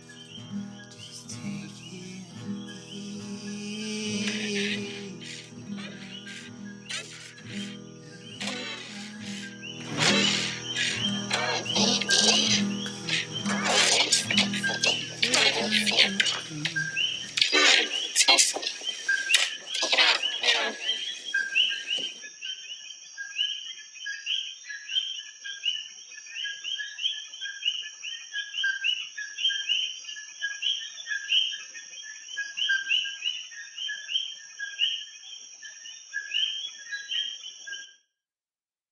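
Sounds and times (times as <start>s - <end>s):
steady high-pitched whine: 0.0s - 22.0s
chorus of short chirping calls: 0.0s - 22.2s.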